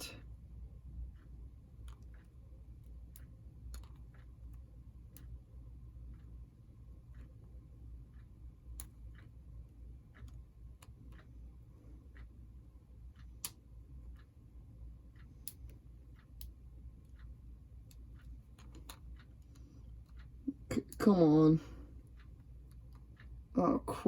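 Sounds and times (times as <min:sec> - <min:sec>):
low steady hum: 0:00.0 - 0:24.0
small plastic parts clicking: 0:03.1 - 0:04.1, 0:17.8 - 0:20.2.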